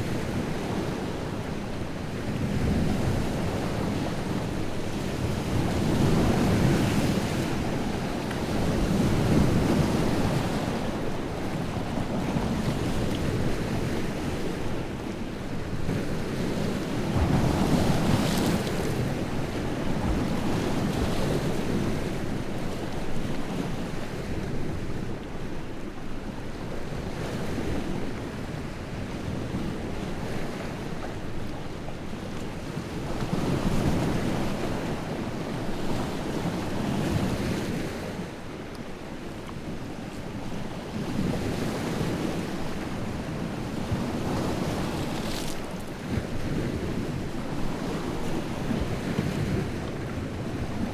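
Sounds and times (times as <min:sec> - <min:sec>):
lake waves breaking on shore: 0:39.8 - 0:50.9.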